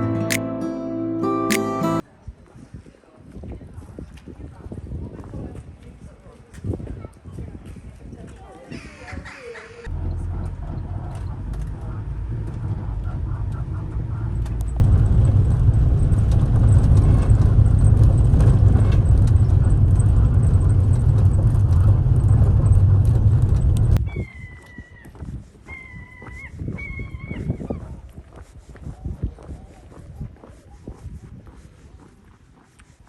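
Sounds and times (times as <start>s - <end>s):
boat engine droning: 9.9s - 24.0s.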